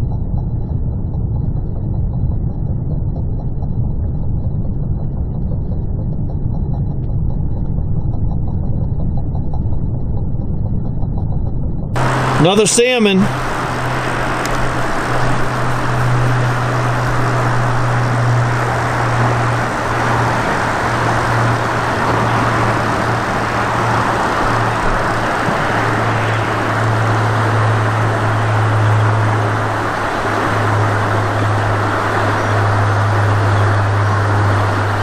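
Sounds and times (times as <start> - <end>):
low rumble: 0.0 - 35.0
fast river water rushing: 12.0 - 35.0.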